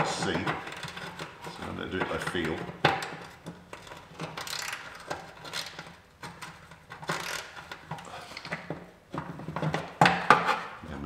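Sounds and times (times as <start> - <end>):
spanner clinking on metal: 2.1 - 8.0.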